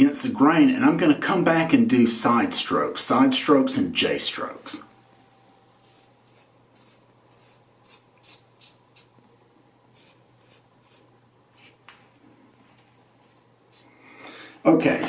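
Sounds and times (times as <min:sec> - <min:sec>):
razor scraping stubble: 0:05.8 - 0:09.1, 0:09.9 - 0:11.8.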